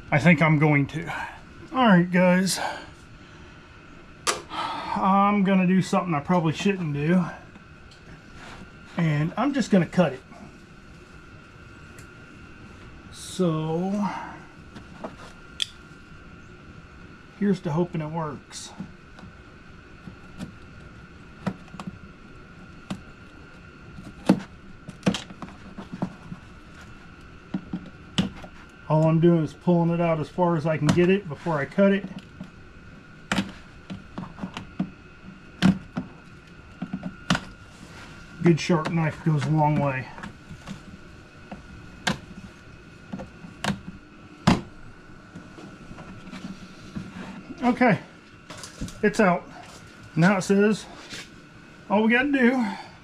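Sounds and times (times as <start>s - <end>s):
faint steady hum: 0.0s - 53.0s
sharp snaps: 15.6s - 15.8s.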